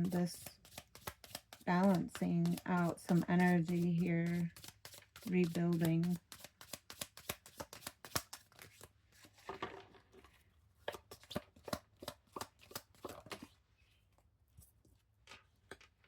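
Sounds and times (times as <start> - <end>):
cards being shuffled: 0.0 - 9.6, 10.9 - 13.6.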